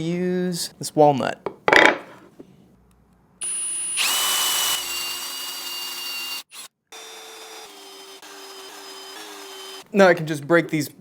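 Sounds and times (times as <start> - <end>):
drill motor whining: 3.4 - 9.8.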